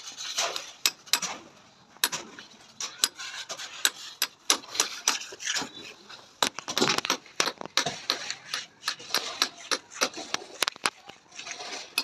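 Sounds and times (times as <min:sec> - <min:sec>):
metal tools tapping and scraping cement: 0:02.0 - 0:12.0.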